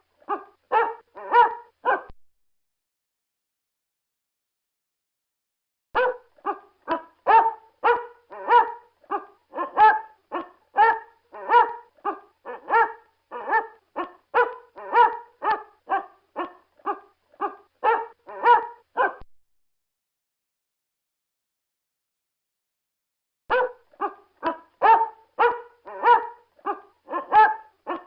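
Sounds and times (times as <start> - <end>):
dog barking: 0.2 - 2.2, 6.0 - 19.3, 23.5 - 28.0.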